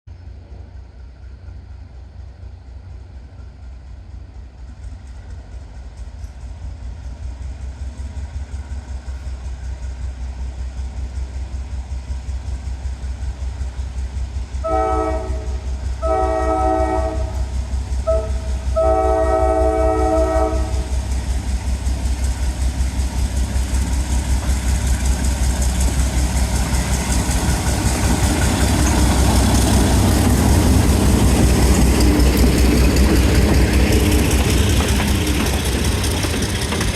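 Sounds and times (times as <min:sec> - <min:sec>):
diesel locomotive engine rumbling: 0:00.1 - 0:36.9
locomotive air horn: 0:14.6 - 0:17.5, 0:18.1 - 0:21.0.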